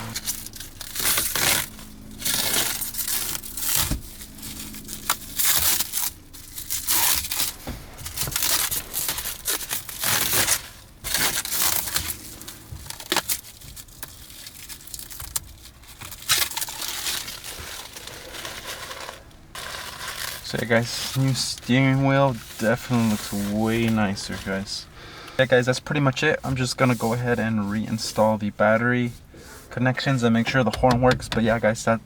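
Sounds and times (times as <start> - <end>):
plastic film crinkling and tearing: 0.0 - 24.7.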